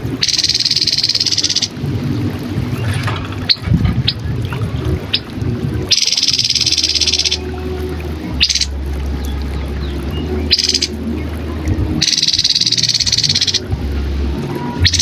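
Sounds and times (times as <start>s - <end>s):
bird calling with rattling trill: 0.2s - 1.7s, 5.9s - 7.4s, 8.4s - 8.7s, 10.5s - 11.0s, 12.0s - 13.6s.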